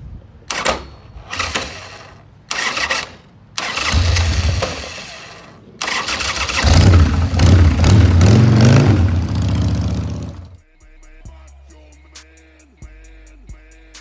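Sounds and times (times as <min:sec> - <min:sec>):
motorcycle engine cranking: 0:00.5 - 0:10.6
motorcycle engine running: 0:00.5 - 0:10.6.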